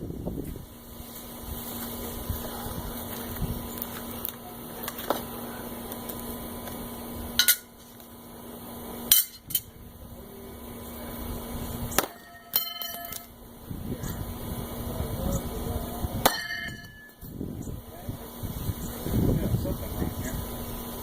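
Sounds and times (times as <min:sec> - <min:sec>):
metallic clang: 0:07.4 - 0:07.7, 0:09.1 - 0:09.7, 0:12.0 - 0:13.3, 0:16.3 - 0:17.2.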